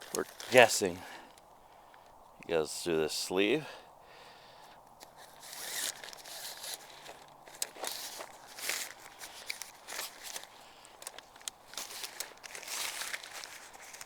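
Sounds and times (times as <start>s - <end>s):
tent fabric rustling: 0.0s - 1.1s, 5.2s - 14.0s.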